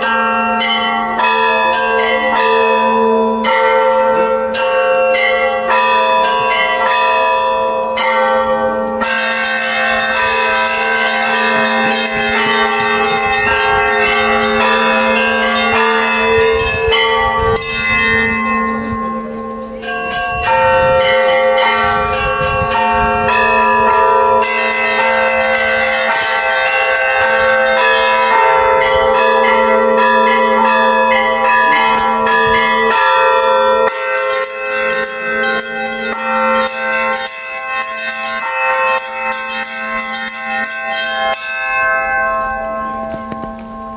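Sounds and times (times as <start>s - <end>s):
large bells humming: 0.0s - 43.9s
small bells chiming quickly: 9.0s - 43.9s.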